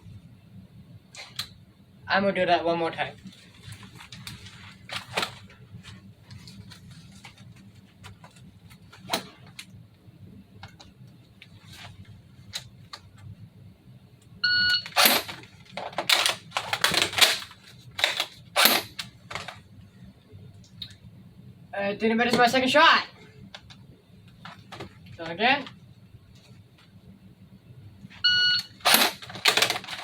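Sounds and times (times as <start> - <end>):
airsoft gun clacks and rattles: 15.0 - 19.6, 28.8 - 30.0.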